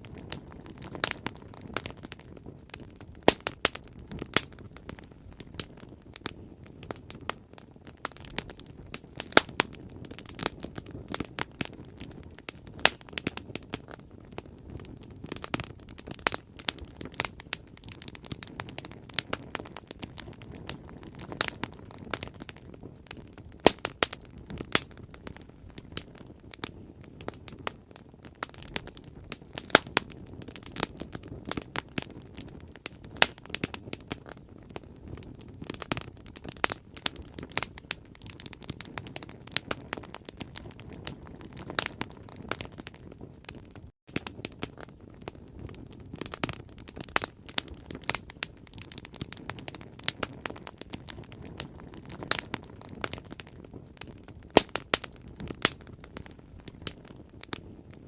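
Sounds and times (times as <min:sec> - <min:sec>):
bonfire crackling and popping: 0:00.0 - 0:58.0
low rush of flame: 0:00.0 - 0:58.0.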